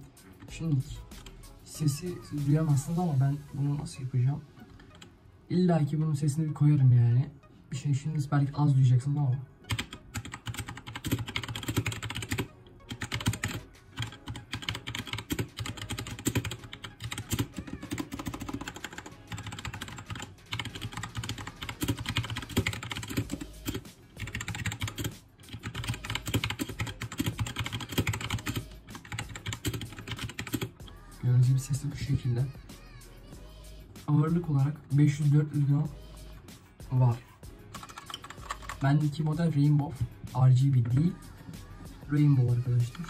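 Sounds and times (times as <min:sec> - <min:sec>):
mechanical keyboard typing: 0:09.7 - 0:30.7, 0:37.7 - 0:39.2.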